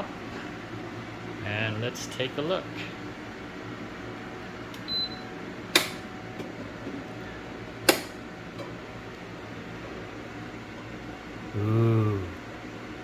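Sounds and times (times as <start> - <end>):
steady low hum: 0.0 - 13.0
air fryer plastic clicks: 5.7 - 6.6, 7.8 - 8.8.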